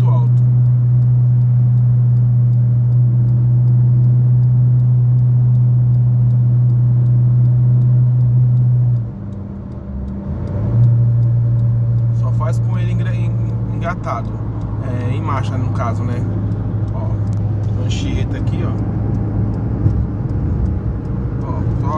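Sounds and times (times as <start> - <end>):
road noise: 0.0 - 21.9.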